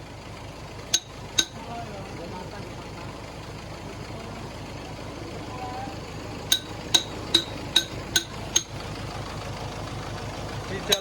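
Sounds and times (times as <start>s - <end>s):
engine running: 0.0s - 11.0s
sharp metallic clinks: 0.9s - 1.6s, 6.5s - 8.8s.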